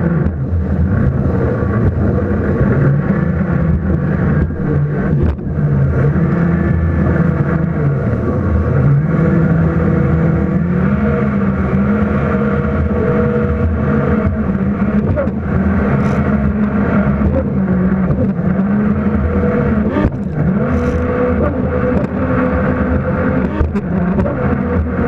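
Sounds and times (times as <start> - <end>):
jet ski engine revving: 0.0 - 25.0
water wash: 0.0 - 25.0.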